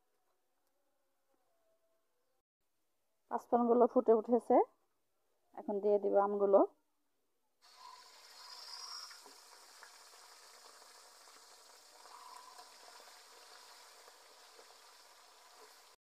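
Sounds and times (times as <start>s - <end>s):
faint sizzling in hot oil: 7.6s - 16.0s.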